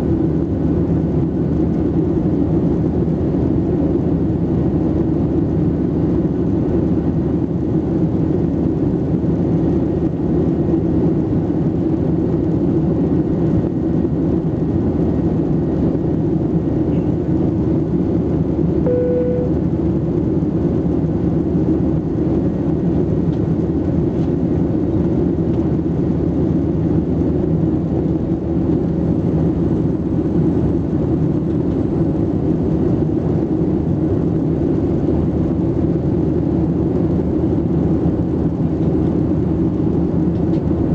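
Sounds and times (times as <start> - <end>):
airplane cabin engine and airflow noise: 0.0 - 40.9
short single tone: 18.8 - 19.8.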